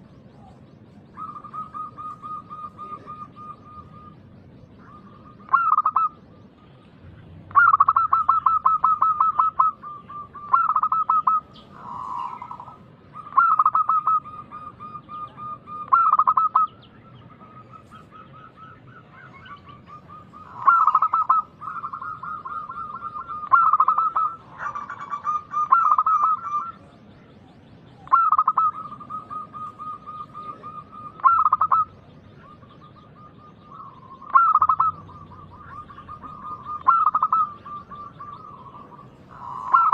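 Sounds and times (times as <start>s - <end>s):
doves cooing: 0.0s - 39.9s.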